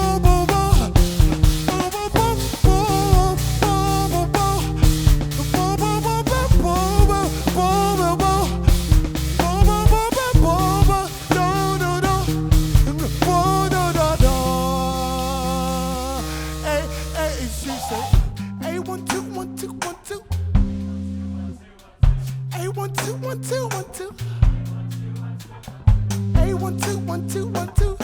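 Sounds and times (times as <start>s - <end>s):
live band music: 0.0s - 15.5s.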